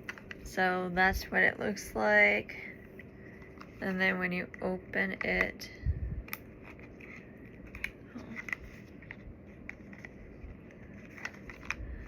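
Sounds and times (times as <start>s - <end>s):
packaging clicks and crinkles: 6.3s - 12.0s.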